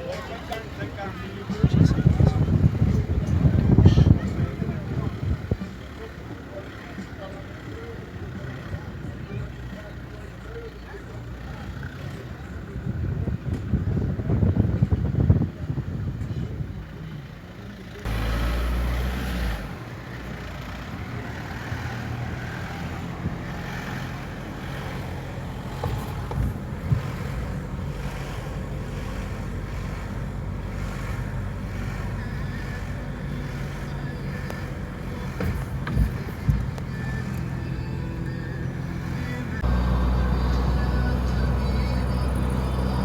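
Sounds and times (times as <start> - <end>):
motor vehicle rumble: 0.0 - 43.0
wind buffeting microphone: 0.7 - 5.9, 12.2 - 17.3, 20.9 - 43.0.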